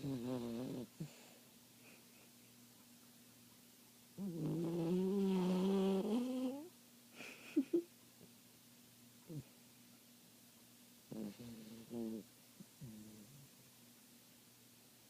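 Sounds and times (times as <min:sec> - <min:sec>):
dog snoring: 0:00.0 - 0:01.3, 0:04.2 - 0:06.7, 0:11.1 - 0:13.5.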